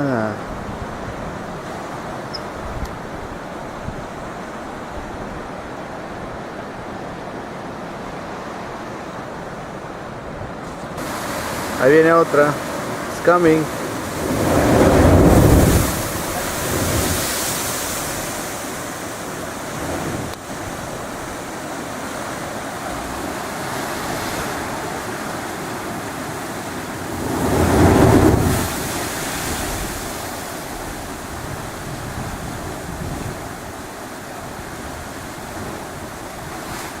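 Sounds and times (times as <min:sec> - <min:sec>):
steady surf: 0:00.0 - 0:37.0
water rushing from blowhole: 0:00.0 - 0:37.0
wind on microphone: 0:00.4 - 0:06.9, 0:14.0 - 0:18.7, 0:26.9 - 0:37.0.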